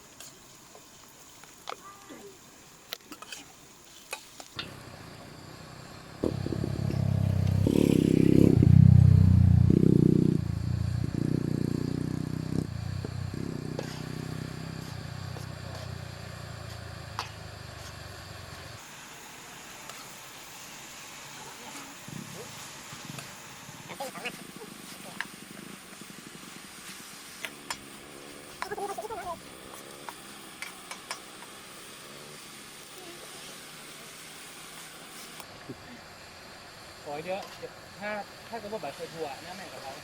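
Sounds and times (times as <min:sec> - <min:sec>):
motor engine passing by: 0:04.7 - 0:18.8.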